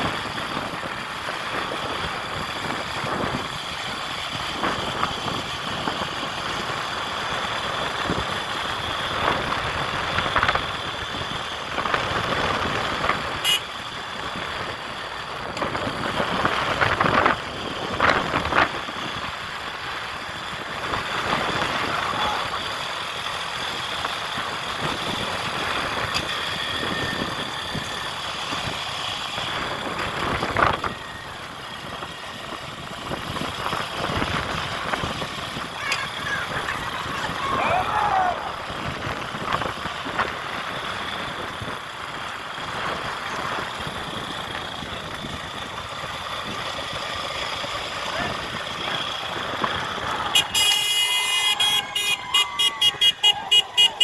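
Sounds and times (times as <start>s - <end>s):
vehicle engine running: 0.0s - 54.0s.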